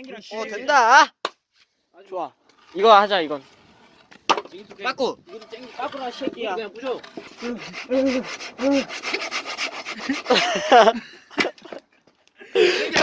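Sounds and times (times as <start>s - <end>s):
person speaking: 4.5s - 9.0s
hand saw cutting log: 5.3s - 10.8s
short voiced sounds: 7.4s - 9.0s.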